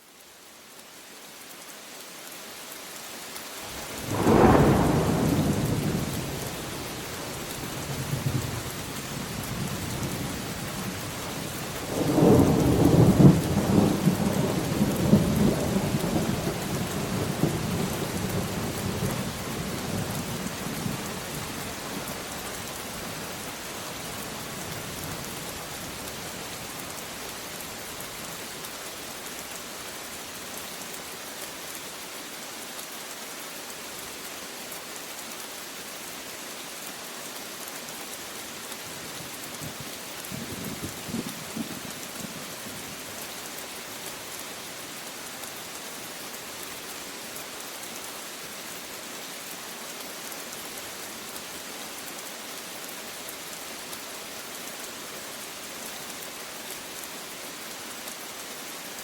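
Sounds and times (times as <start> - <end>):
steady rain falling: 0.0 - 59.0
rolling thunder rumble: 4.0 - 6.6
thunder clap: 4.1 - 6.0.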